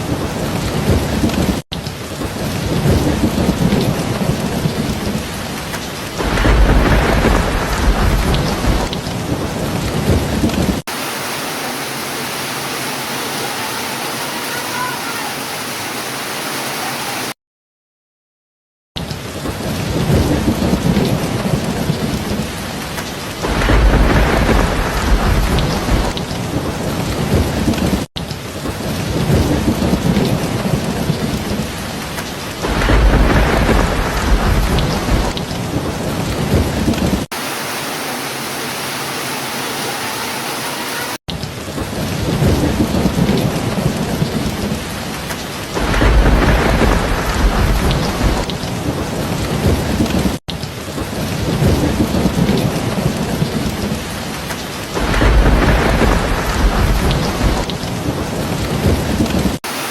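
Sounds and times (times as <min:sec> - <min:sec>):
thunder rolling: 0:00.0 - 0:11.1, 0:19.3 - 0:37.4, 0:41.6 - 0:50.4, 0:51.0 - 0:59.9
heavy rain: 0:00.0 - 0:17.4, 0:19.0 - 0:59.9.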